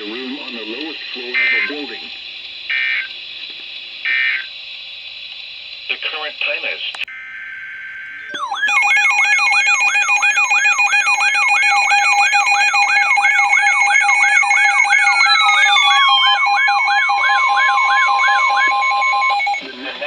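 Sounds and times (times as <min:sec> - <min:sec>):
warbling alert alarm: 0:07.1 - 0:19.6
steady high tones: 0:07.1 - 0:20.0
tone gliding down: 0:07.2 - 0:19.6.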